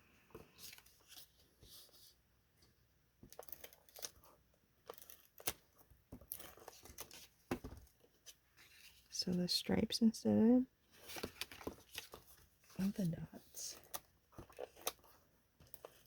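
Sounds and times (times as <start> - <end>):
paper rustling: 10.9 - 16.0.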